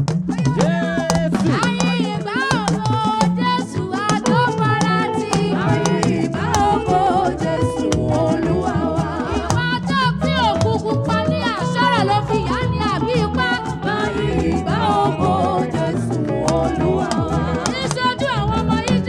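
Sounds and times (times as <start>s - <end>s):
driving drums and percussion: 0.0s - 19.0s
upbeat praise music: 0.0s - 19.0s.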